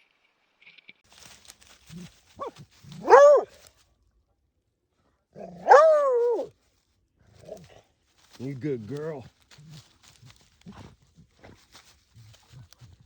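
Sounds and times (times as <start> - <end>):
dog barking: 2.4 - 3.5, 5.4 - 6.5.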